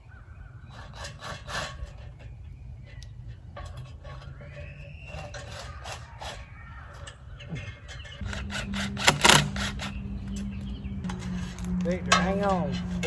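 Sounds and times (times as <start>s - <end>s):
wood boards scraping and knocking: 0.7s - 13.0s
steady low rumble: 7.4s - 13.0s.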